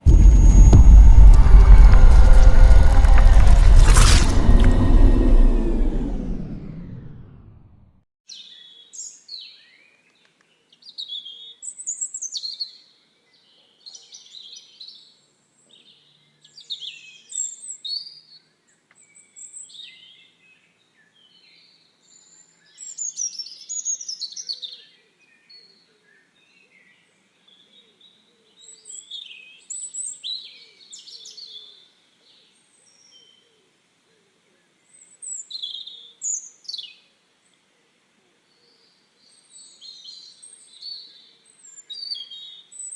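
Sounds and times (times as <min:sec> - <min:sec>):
songbirds chirping: 0:08.3 - 0:42.9
faint background hiss: 0:25.2 - 0:42.9.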